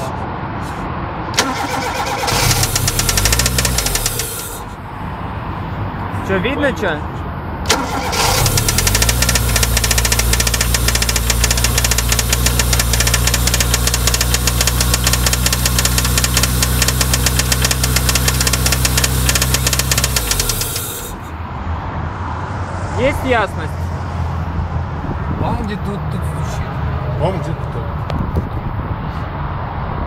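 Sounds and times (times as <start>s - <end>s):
car engine revving: 1.4s - 4.8s, 7.7s - 21.4s
fast engine knock: 2.4s - 4.5s, 8.4s - 21.2s.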